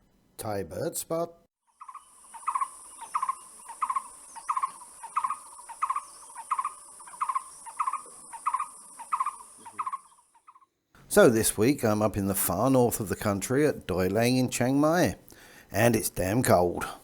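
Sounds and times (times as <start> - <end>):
steady high hiss: 1.9 - 9.8.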